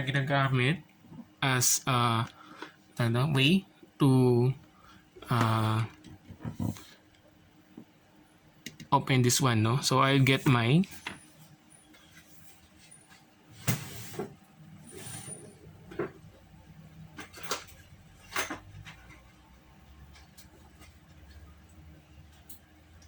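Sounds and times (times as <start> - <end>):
objects knocking and scraping: 6.0 - 6.9, 15.2 - 16.4.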